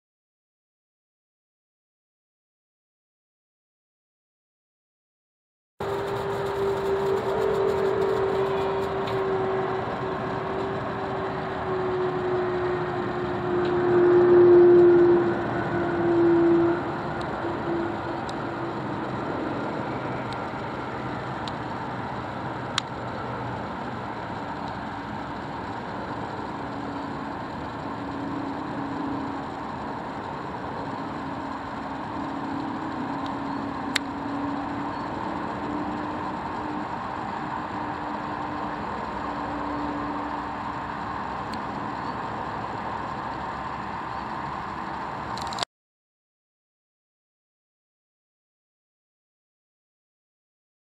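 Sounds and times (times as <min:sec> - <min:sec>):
jet engines passing overhead: 0:05.8 - 0:45.6.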